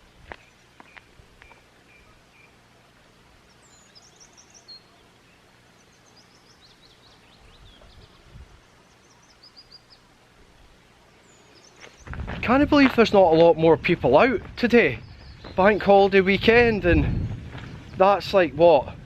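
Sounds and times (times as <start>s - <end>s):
songbird singing: 0.0s - 19.0s.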